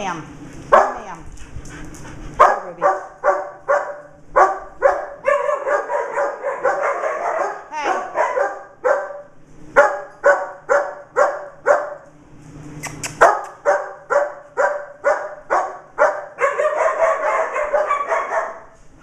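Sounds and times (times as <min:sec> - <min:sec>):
dog barking: 0:00.7 - 0:01.1, 0:02.4 - 0:12.0, 0:13.2 - 0:18.8.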